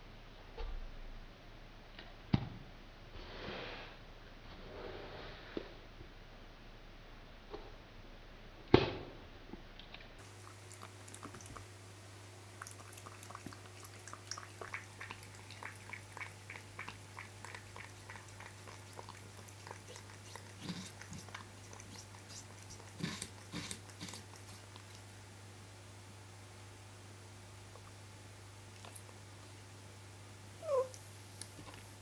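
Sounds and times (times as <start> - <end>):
cat lapping water: 10.2 - 25.1.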